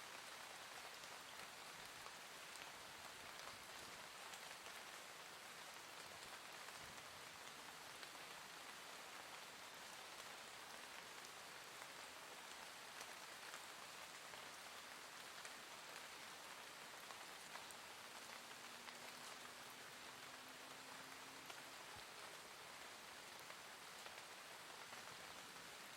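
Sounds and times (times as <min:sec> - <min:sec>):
gentle rain falling: 0:00.0 - 0:25.9.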